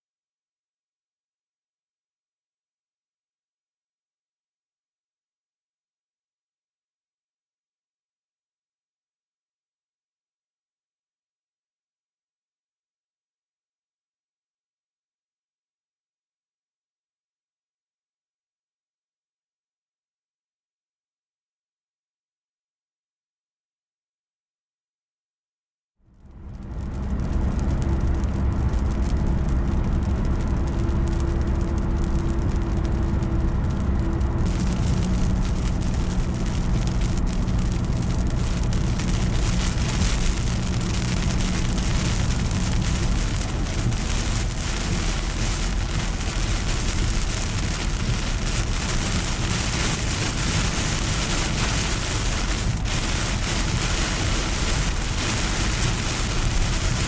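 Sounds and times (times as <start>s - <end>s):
heavy rain: 26.2s - 57.0s
low steady hum: 26.2s - 57.0s.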